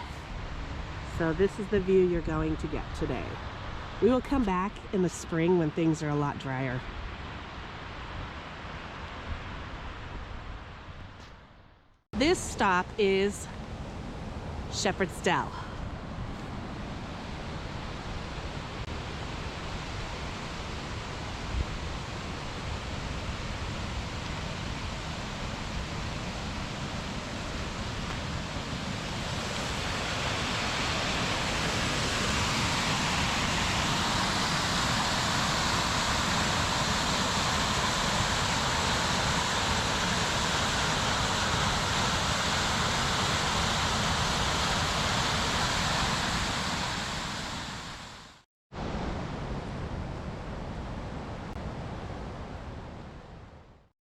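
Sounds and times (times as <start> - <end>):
waterfall roar: 16.7 - 48.3.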